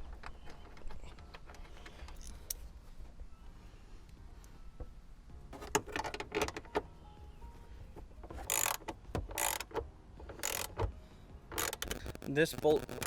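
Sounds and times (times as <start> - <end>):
socket ratchet clicking: 8.4 - 10.9, 11.5 - 13.0.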